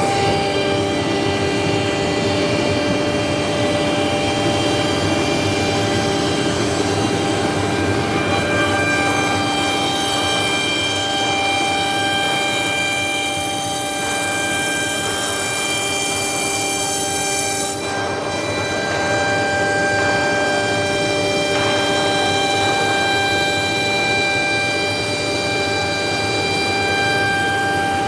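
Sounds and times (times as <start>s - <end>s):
router spindle whine: 0.0s - 28.0s.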